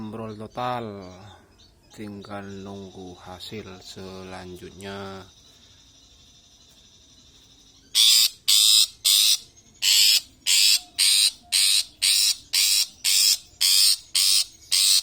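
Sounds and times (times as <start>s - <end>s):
shrike harsh rasping calls: 8.0s - 15.0s.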